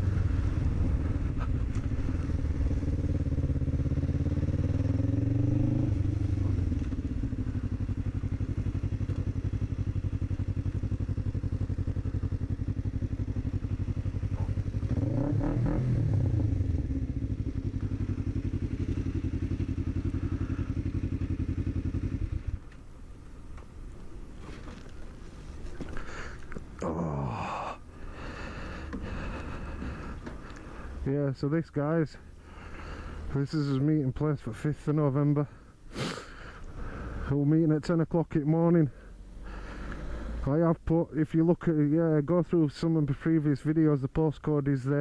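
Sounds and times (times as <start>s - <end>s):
motorcycle engine running: 0.0s - 22.7s.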